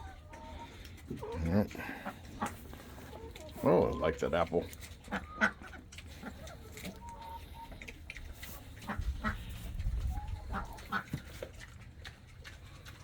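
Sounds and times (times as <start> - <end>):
hog crunching apple: 0.0 - 13.0
hog grunting: 1.0 - 5.6.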